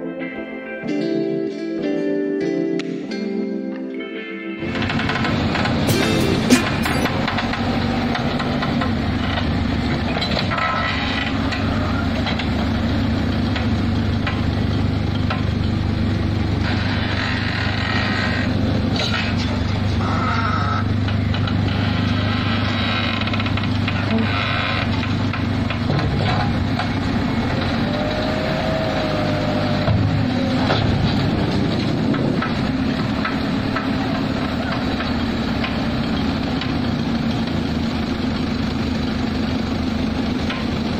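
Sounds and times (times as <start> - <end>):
diesel machinery rumbling: 4.6 - 40.9
sharp knocks: 5.9 - 7.5.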